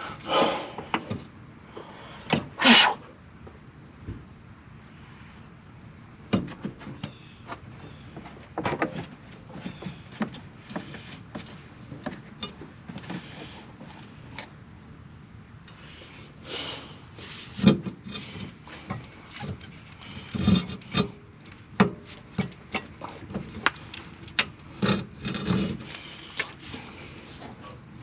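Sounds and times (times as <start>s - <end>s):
hand tools knocking and scraping: 21.8s - 27.8s.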